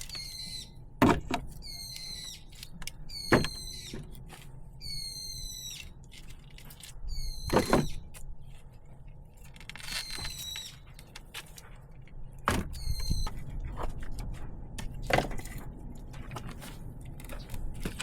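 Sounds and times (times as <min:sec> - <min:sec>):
nails squealing out of wood: 0:03.1 - 0:04.0.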